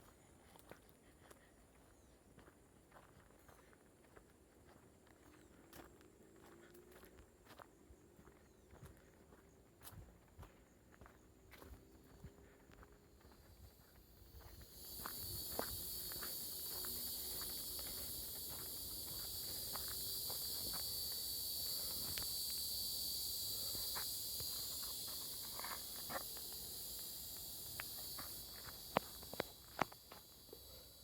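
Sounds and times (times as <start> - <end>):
high-pitched insect chorus: 5.3 - 31.0.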